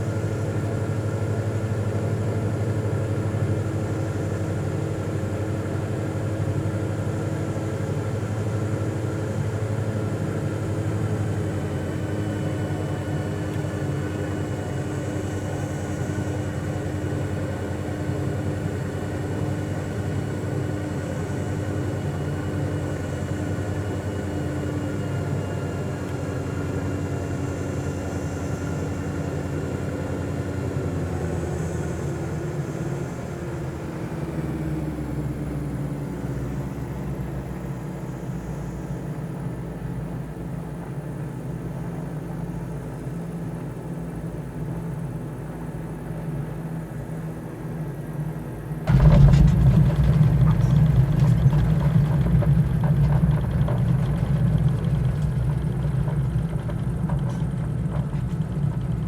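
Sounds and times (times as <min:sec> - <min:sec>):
low mechanical drone: 0:47.9 - 0:59.0.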